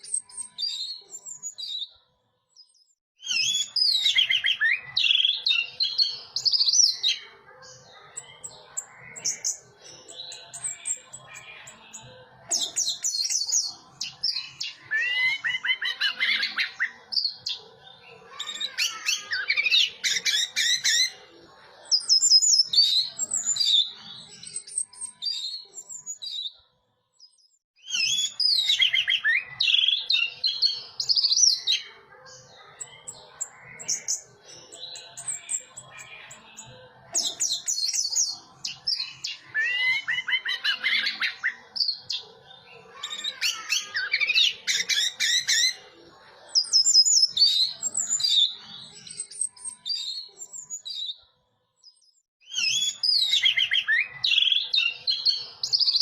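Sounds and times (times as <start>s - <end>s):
thrush singing whistled phrases: 2.8s - 7.0s, 27.8s - 31.6s, 52.4s - 56.0s.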